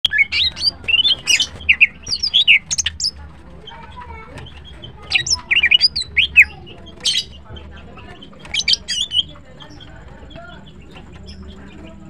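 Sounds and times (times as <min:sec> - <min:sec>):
bird singing chirps and whistles: 0:00.0 - 0:03.2, 0:05.1 - 0:07.4, 0:08.4 - 0:09.8.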